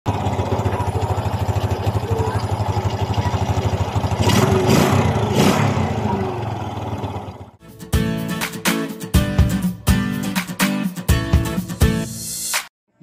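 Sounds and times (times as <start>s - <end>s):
motorcycle engine idling and revving: 0.1s - 7.6s.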